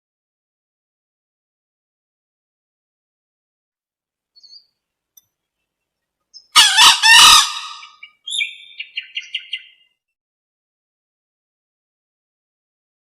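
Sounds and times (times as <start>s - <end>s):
harsh junglefowl call: 6.4s - 9.8s.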